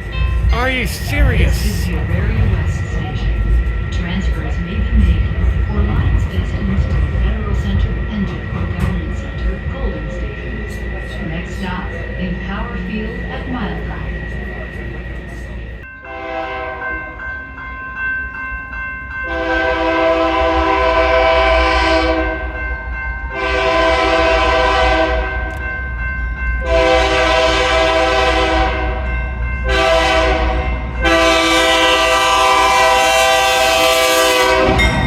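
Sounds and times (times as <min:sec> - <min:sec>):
low rumble of train: 0:00.0 - 0:35.0
locomotive air horn blasts: 0:19.3 - 0:22.4, 0:23.4 - 0:25.4, 0:26.7 - 0:29.0, 0:29.7 - 0:35.0.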